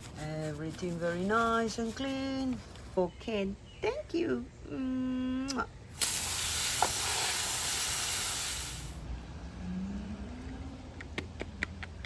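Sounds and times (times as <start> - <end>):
loud even hiss: 5.9 - 9.0.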